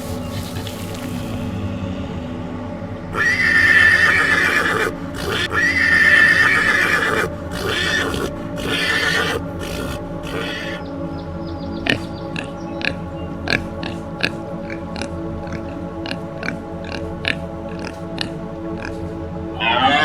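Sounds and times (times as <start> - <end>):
horse neighing: 3.1 - 10.8, 19.6 - 20.0.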